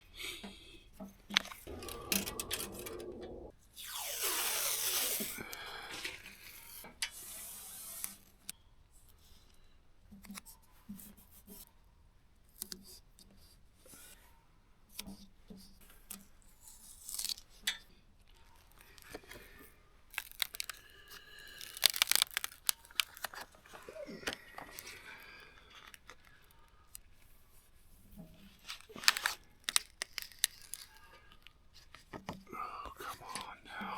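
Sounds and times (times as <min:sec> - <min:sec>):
vinyl sheet tearing rip: 0:01.7 - 0:08.3, 0:16.7 - 0:17.4, 0:20.1 - 0:23.5, 0:28.7 - 0:31.0
sheet crinkling and crackling: 0:15.9 - 0:32.3.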